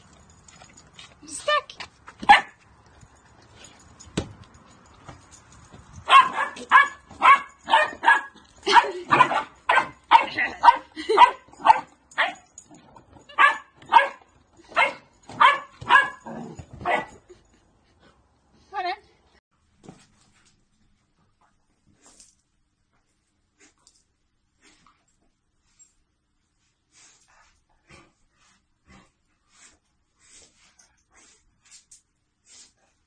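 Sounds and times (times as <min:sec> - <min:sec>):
dog barking: 0:02.2 - 0:02.6, 0:06.1 - 0:12.4, 0:13.3 - 0:17.2.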